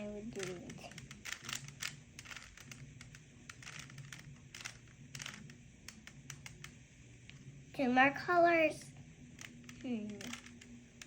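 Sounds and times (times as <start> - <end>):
plastic puzzle cube clicking: 0.3 - 6.8, 9.4 - 11.0.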